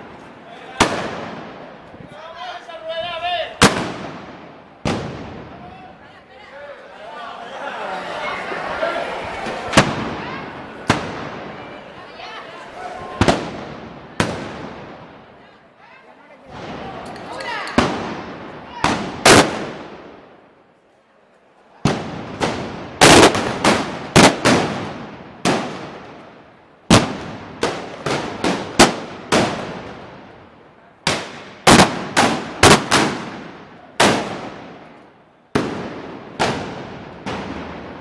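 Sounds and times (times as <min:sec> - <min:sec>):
loud explosive bangs: 0:00.8 - 0:01.9, 0:03.6 - 0:05.7, 0:09.5 - 0:11.8, 0:13.2 - 0:15.2, 0:17.8 - 0:20.2, 0:21.8 - 0:26.3, 0:26.9 - 0:30.3, 0:31.1 - 0:34.9, 0:35.6 - 0:38.0.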